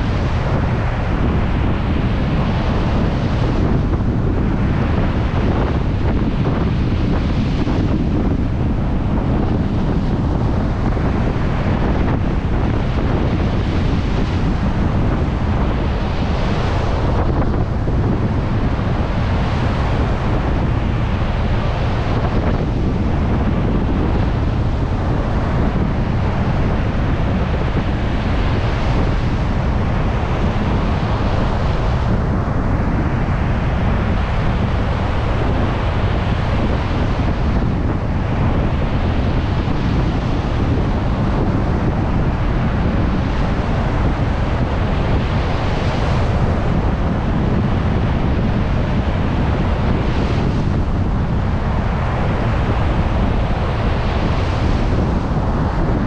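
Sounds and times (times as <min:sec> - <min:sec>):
heavy surf breaking: 0:00.0 - 0:56.0
wind buffeting microphone: 0:00.0 - 0:56.0.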